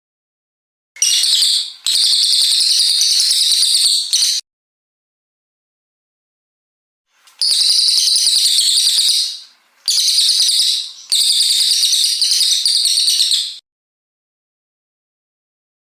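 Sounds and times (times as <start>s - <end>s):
songbird singing high-pitched song: 1.0s - 4.4s, 7.2s - 13.6s.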